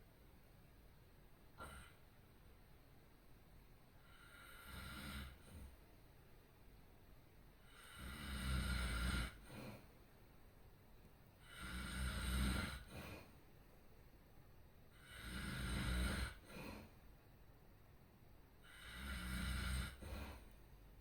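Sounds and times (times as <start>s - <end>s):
person snoring heavily: 4.1s - 5.4s, 7.7s - 9.8s, 11.4s - 13.3s, 15.0s - 16.9s, 18.6s - 20.4s.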